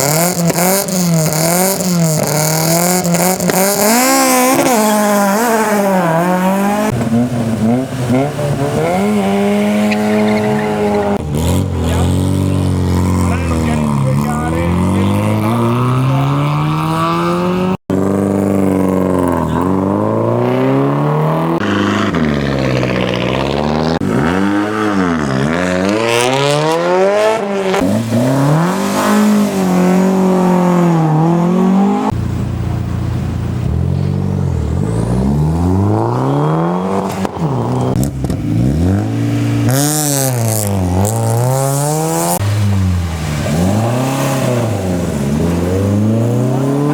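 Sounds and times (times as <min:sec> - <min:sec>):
rally car engines revving: 0:00.0 - 0:46.9.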